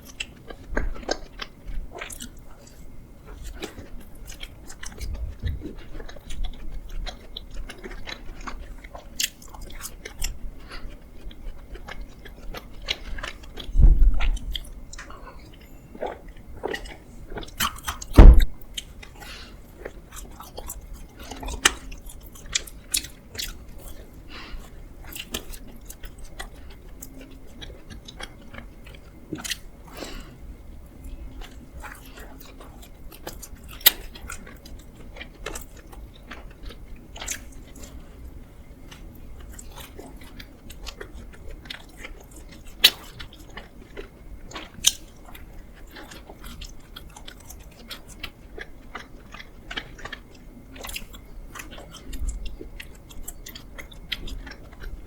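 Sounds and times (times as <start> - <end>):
biting and chewing: 0.0 - 55.0
loud low thumps: 18.2 - 18.6.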